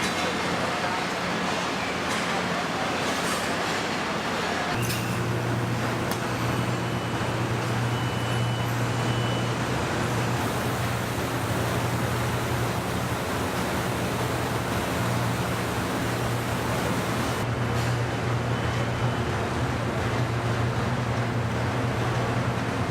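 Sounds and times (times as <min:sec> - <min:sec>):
low mechanical hum: 0:00.0 - 0:22.9
broad noise wash: 0:09.6 - 0:17.6.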